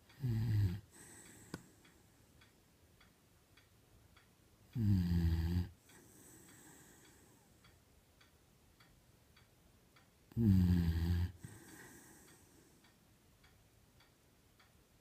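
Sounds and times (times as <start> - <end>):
dog snoring: 0.2 - 1.1, 4.8 - 5.7, 10.4 - 11.6.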